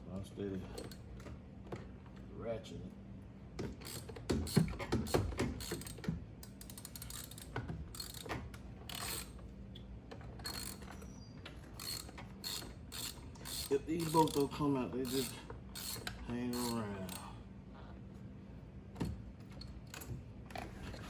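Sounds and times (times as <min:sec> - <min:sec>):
hand ratchet clicking: 0:03.8 - 0:09.4, 0:10.4 - 0:10.9, 0:11.8 - 0:17.3.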